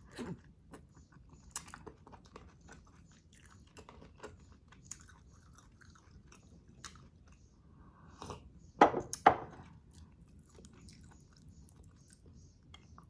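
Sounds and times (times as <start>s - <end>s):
wet chewing: 0.1s - 7.4s.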